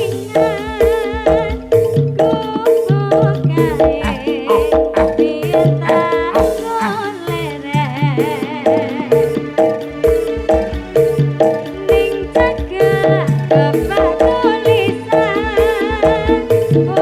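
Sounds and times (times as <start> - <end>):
live band music through pa: 0.0 - 17.0
steady drum beat: 0.0 - 17.0
wavering lead melody with vibrato: 0.0 - 17.0.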